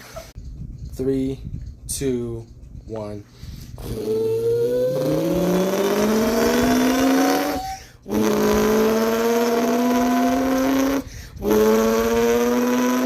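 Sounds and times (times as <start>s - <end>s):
person imitating engine note: 3.8s - 13.0s
person imitating supercharger whine: 3.8s - 13.0s.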